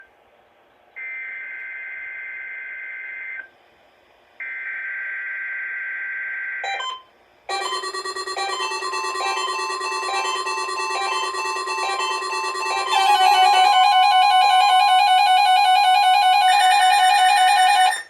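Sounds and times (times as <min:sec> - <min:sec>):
digital data tones: 0:07.5 - 0:14.7
music: 0:07.5 - 0:18.0.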